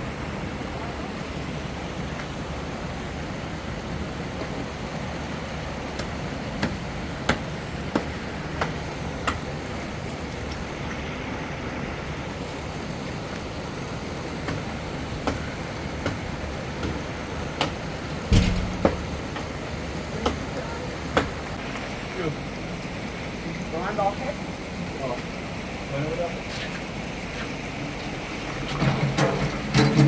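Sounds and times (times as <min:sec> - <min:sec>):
sharp knocks: 0:17.6 - 0:19.6
heavy thump: 0:18.3 - 0:19.5.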